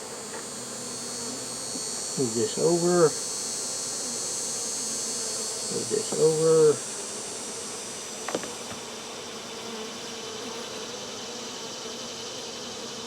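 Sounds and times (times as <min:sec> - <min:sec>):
honey bees buzzing: 0:00.0 - 0:13.0
brief knock: 0:08.3 - 0:08.8.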